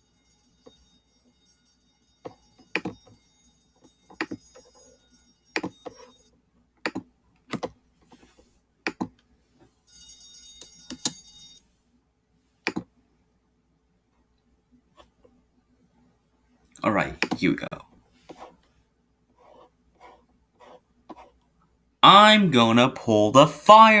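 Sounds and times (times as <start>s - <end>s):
faint high-pitched electronic whine: 0.0s - 6.9s, 9.7s - 12.5s
sharp clicks and taps: 6.9s - 7.7s, 12.7s - 12.9s, 17.2s - 17.5s.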